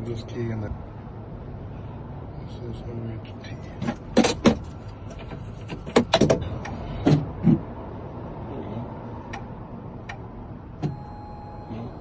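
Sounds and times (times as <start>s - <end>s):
car key clicking and knocking: 4.1s - 7.6s.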